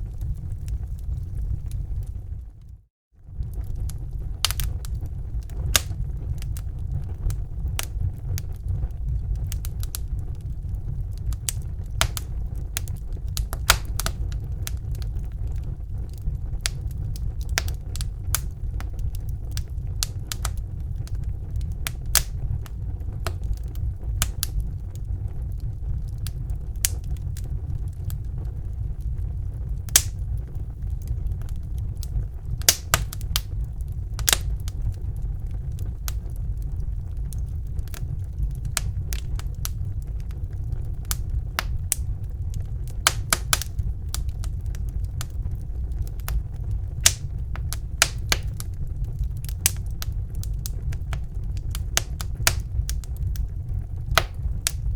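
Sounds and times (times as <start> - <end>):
low rumble: 0.0 - 54.9
wood fire crackling and popping: 0.0 - 54.9.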